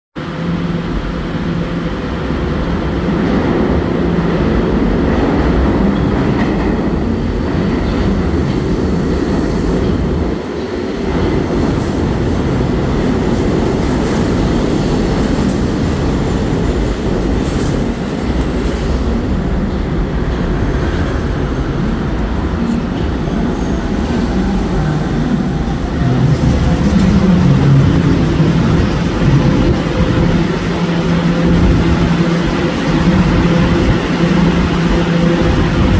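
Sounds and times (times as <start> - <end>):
train wheels rumbling on rails: 0.2 - 35.9
clickety-clack over rail joints: 3.2 - 35.9.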